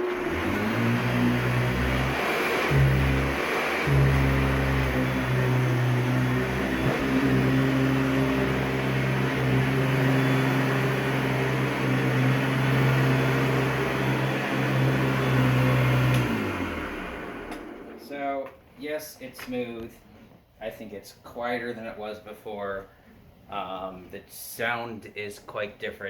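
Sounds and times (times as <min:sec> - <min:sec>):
upright vacuum cleaner humming: 0:00.0 - 0:18.2.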